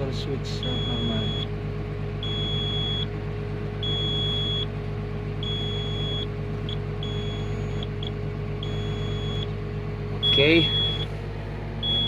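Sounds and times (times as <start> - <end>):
diesel engine idling: 0.0 - 12.0
warning buzzer beeping: 0.6 - 1.5, 2.2 - 3.1, 3.8 - 4.7, 5.4 - 9.5, 10.2 - 11.1, 11.8 - 12.0.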